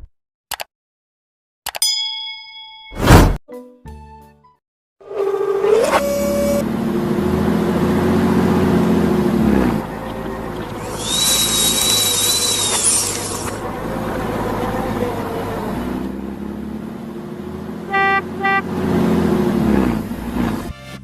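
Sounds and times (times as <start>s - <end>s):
vehicle engine humming: 5.2s - 20.7s
loud hiss: 11.0s - 13.5s
horn toots: 17.8s - 19.1s.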